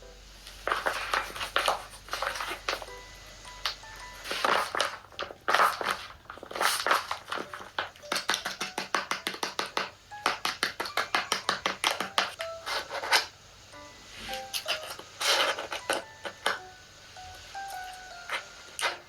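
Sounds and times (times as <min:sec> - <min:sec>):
rapid sharp taps: 0:06.8 - 0:12.4.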